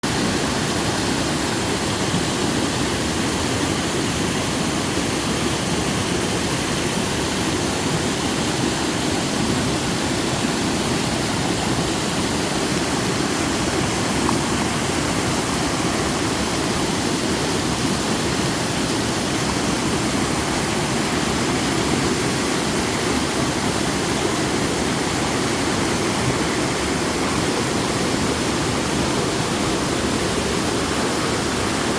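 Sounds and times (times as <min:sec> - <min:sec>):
waterfall rushing: 0:00.0 - 0:31.9.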